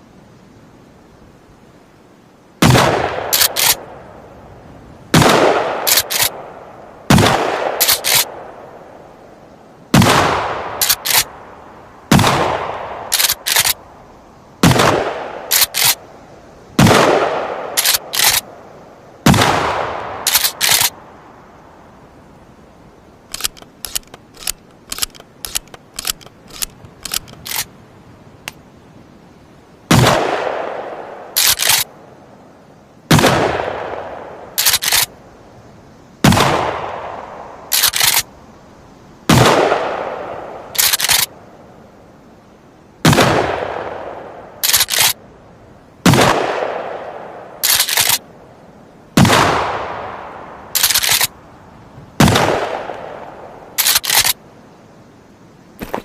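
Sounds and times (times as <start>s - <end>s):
shotgun shots: 2.6s - 3.8s, 5.1s - 6.4s, 7.1s - 8.3s, 9.9s - 11.3s, 12.1s - 13.8s, 14.6s - 16.0s, 16.8s - 18.4s, 19.2s - 20.9s, 29.9s - 30.8s, 33.1s - 35.1s, 36.2s - 37.0s, 39.3s - 40.0s, 43.0s - 45.2s, 46.0s - 46.9s, 49.2s - 50.0s, 52.2s - 53.1s
short clicks: 3.3s - 3.8s, 5.9s - 6.3s, 7.8s - 8.3s, 10.8s - 11.3s, 13.1s - 13.8s, 15.5s - 16.0s, 17.8s - 18.4s, 20.3s - 20.9s, 23.3s - 27.7s, 31.4s - 31.9s, 34.6s - 35.1s, 37.7s - 38.3s, 40.8s - 41.3s, 44.6s - 45.2s, 47.6s - 48.2s, 50.8s - 51.3s, 53.8s - 54.4s
shotgun pump action racking: 3.3s - 3.8s, 5.9s - 6.3s, 7.8s - 8.3s, 10.8s - 11.3s, 13.1s - 13.8s, 15.5s - 16.0s, 17.8s - 18.4s, 20.3s - 20.9s, 23.3s - 27.7s, 31.4s - 31.9s, 34.6s - 35.1s, 37.7s - 38.3s, 40.8s - 41.3s, 44.6s - 45.2s, 47.6s - 48.2s, 50.8s - 51.3s, 53.8s - 54.4s.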